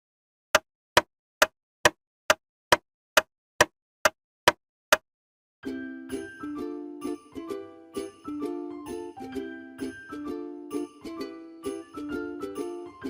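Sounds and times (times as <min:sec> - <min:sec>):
cheerful music with jingle bells: 0:05.6 - 0:13.0.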